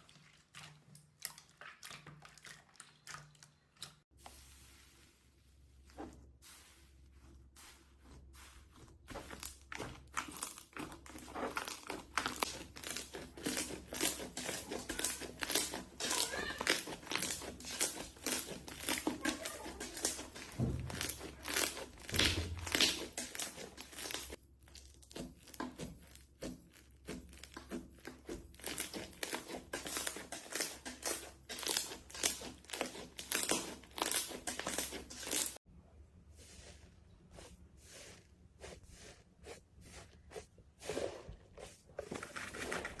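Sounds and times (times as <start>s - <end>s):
slime crackling and popping: 9.4s - 25.6s, 28.6s - 35.6s.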